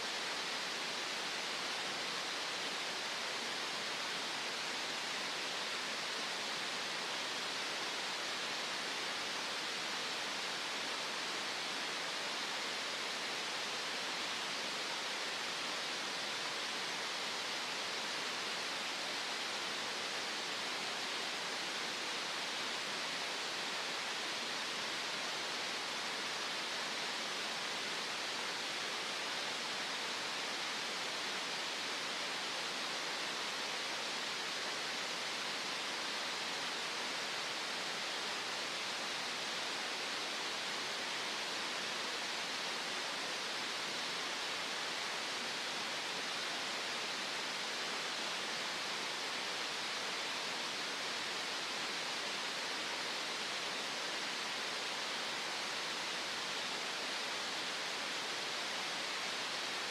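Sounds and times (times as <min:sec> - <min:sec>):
steady green noise hiss: 0:00.0 - 0:59.9.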